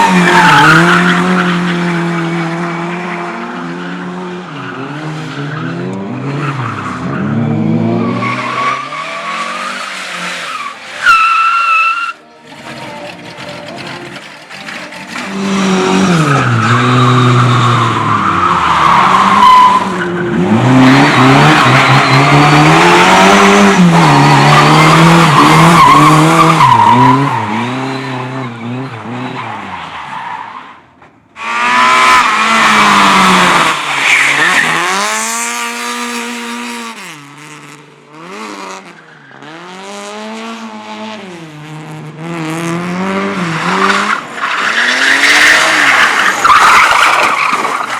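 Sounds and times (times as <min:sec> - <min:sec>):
car engine revving: 0:00.0 - 0:30.3, 0:31.4 - 0:47.9
tyres squealing: 0:10.5 - 0:22.6.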